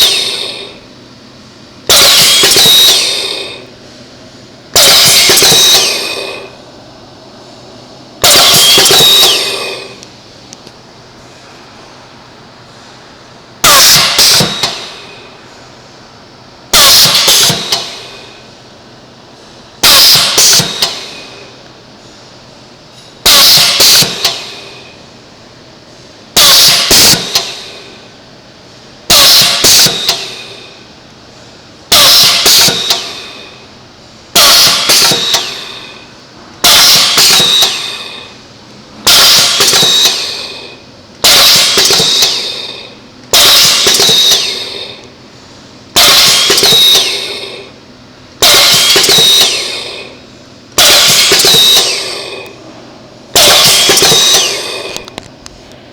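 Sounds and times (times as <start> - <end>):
loud sudden machine noise: 0.0 - 1.1, 1.8 - 10.0, 13.6 - 15.6, 16.7 - 18.6, 19.8 - 21.6, 23.2 - 25.0, 26.3 - 28.1, 29.1 - 30.9, 31.9 - 55.3
filling machine running: 0.0 - 12.0, 12.7 - 16.0, 16.6 - 18.7, 23.2 - 25.2, 25.9 - 55.9.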